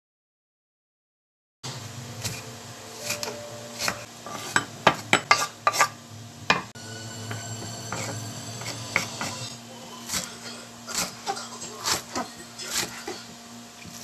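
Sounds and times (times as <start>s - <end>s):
steady low hum: 1.7s - 14.0s
utensils clinking against pots: 2.2s - 13.4s.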